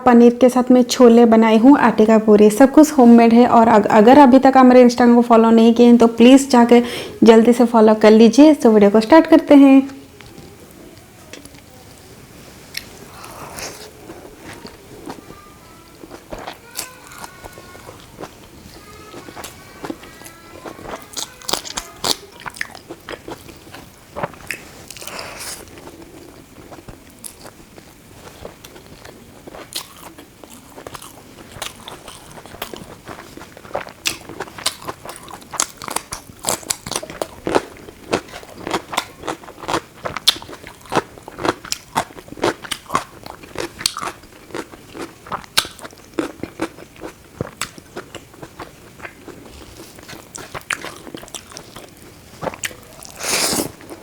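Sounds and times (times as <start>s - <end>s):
crunchy chewing of food: 12.7s - 54.0s.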